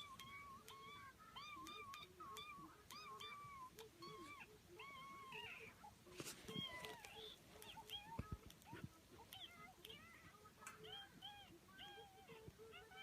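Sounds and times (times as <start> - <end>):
chirping meows: 0.0 - 5.8
noisy scuffle: 3.4 - 11.2.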